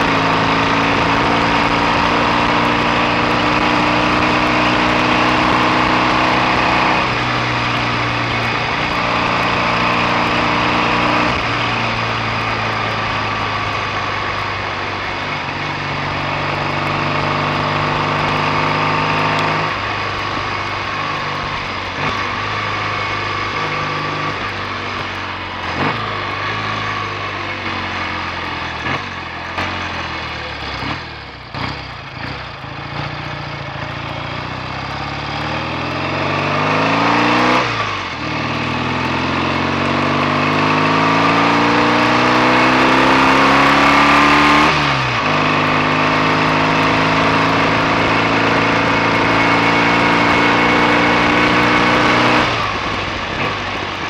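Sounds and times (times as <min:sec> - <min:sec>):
motorcycle engine running: 0:00.0 - 0:54.0.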